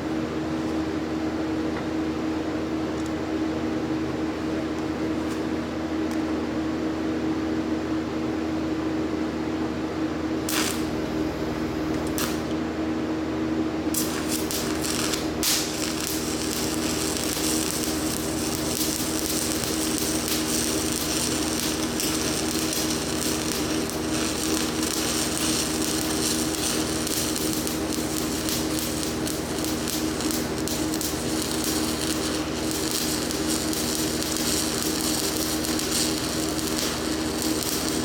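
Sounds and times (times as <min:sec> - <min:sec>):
welding machine hum: 0:10.3 - 0:12.6, 0:13.8 - 0:38.0
welding arc crackling hiss: 0:10.4 - 0:11.3, 0:11.9 - 0:12.5, 0:13.9 - 0:38.0.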